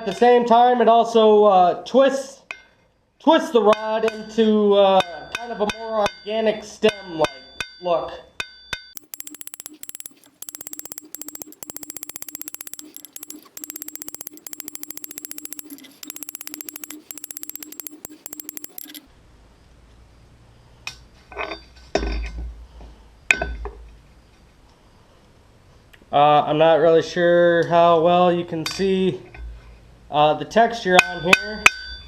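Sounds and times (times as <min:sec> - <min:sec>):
hammer tapping steel rod: 0:09.0 - 0:19.0
metal clinks and knocks: 0:09.0 - 0:19.0.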